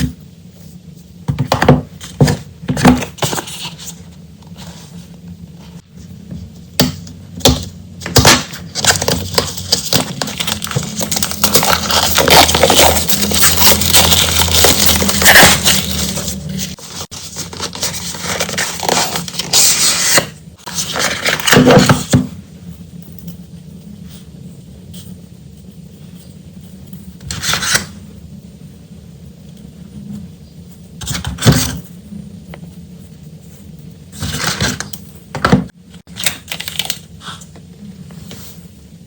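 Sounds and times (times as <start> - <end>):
packaging and paper crinkling: 8.7 - 22.0, 36.1 - 37.2.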